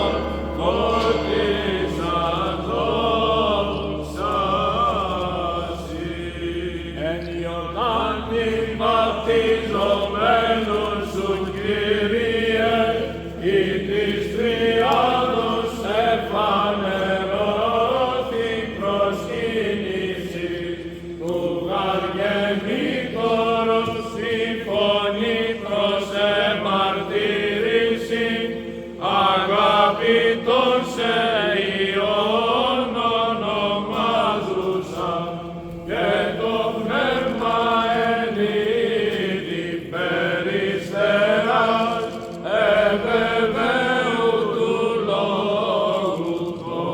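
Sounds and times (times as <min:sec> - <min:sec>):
held drone note: 0:00.0 - 0:07.5
melodic chanting: 0:00.0 - 0:46.9.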